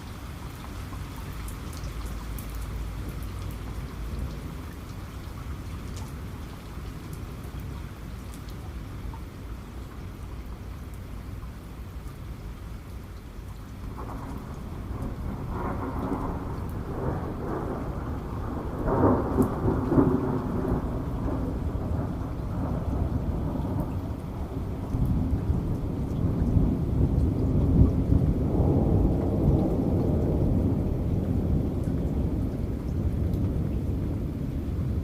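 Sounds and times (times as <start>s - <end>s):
rain falling: 0.0s - 35.0s
thunder rolling: 13.9s - 35.0s.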